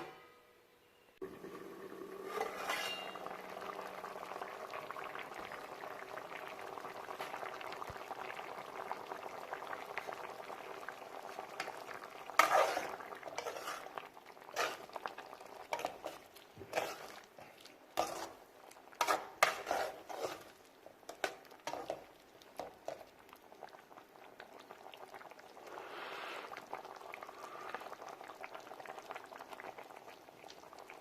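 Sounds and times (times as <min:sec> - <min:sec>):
gravy bubbling in a pot: 0:01.2 - 0:31.0
spoon stirring against pot: 0:02.3 - 0:03.4, 0:11.3 - 0:23.1.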